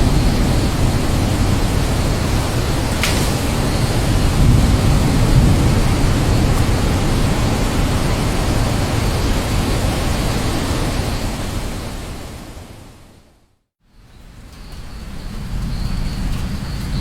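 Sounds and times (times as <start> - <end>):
heavy water rushing: 0.0 - 13.1.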